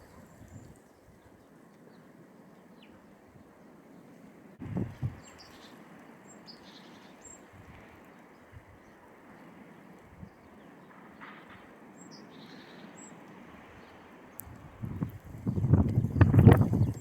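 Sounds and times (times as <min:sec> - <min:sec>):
blizzard wind blowing: 0:02.2 - 0:17.0
faint bird chirps: 0:10.3 - 0:13.2.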